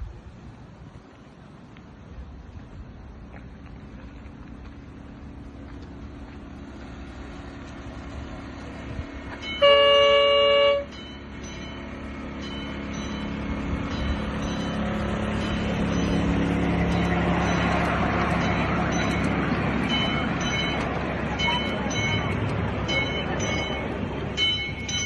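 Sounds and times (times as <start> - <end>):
train rumble: 0.0 - 25.0
train horn: 9.5 - 11.0.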